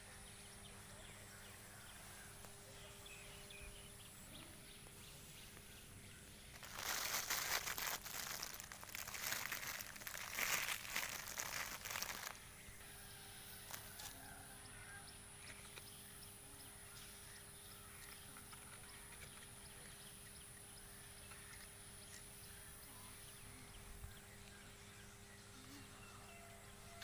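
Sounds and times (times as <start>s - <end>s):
rustling crinkling noise: 6.5s - 12.6s.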